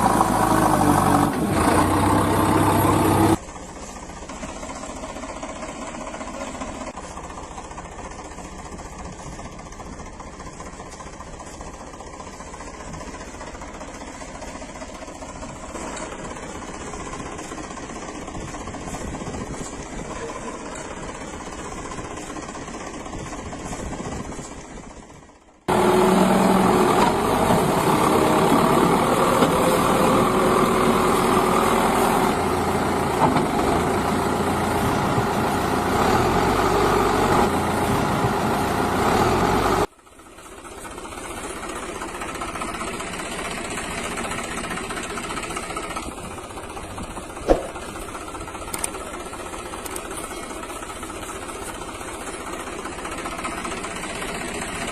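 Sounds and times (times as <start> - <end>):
vehicle engine running: 0.0 - 54.9.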